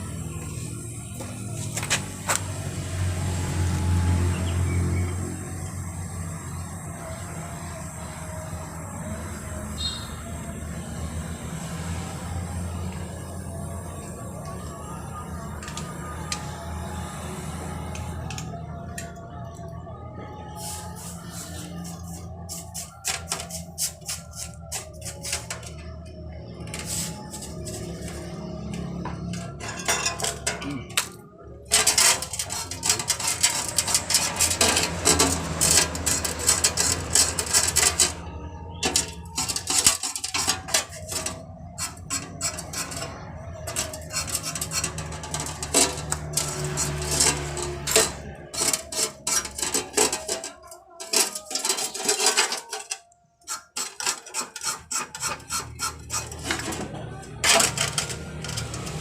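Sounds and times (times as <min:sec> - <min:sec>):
metal tools clinking on metal: 0:26.7 - 0:38.2, 0:38.8 - 0:59.0.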